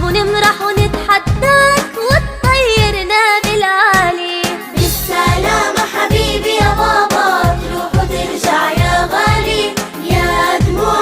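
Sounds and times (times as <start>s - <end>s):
steady drum beat: 4.7s - 11.0s
voices singing together: 4.7s - 11.0s.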